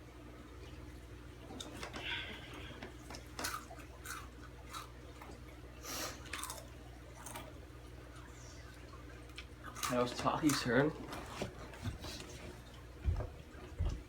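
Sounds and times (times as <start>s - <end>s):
crunching chips in mouth: 3.4s - 4.9s, 6.1s - 7.5s.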